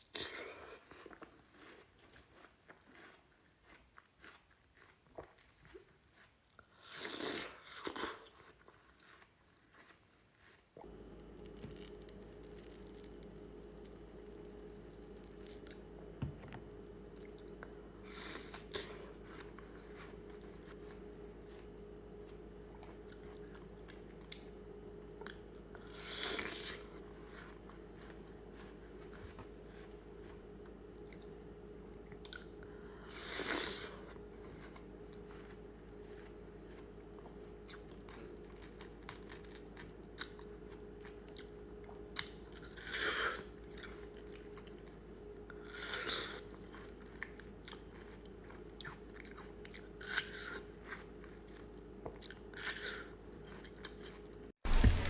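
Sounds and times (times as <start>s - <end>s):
soft chewing clicks: 0.2s - 16.0s, 16.6s - 32.8s, 33.4s - 54.5s
crunchy bites into watermelon: 10.8s - 21.0s
faint steady hum: 10.8s - 55.0s.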